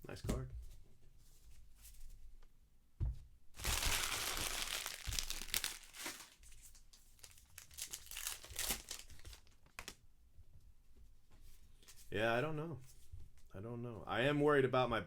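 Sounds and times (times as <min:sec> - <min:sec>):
card pack wrapper ripping: 0:03.6 - 0:10.0
wrapper crinkling: 0:03.6 - 0:10.0.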